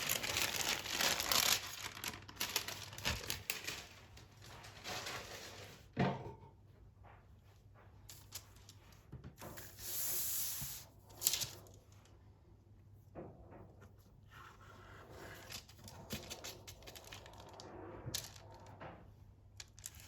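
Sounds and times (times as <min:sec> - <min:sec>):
hiss: 0:09.7 - 0:10.9.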